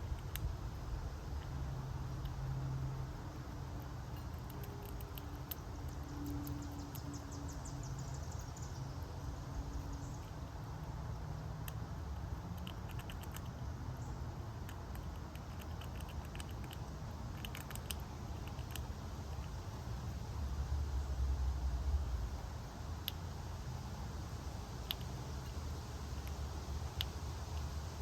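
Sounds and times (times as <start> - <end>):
rapid high ticks: 0.0 - 8.7, 11.5 - 13.8, 14.6 - 19.6, 24.8 - 28.0
animals eating at feeder: 0.0 - 20.5
steady low rumble: 0.0 - 28.0.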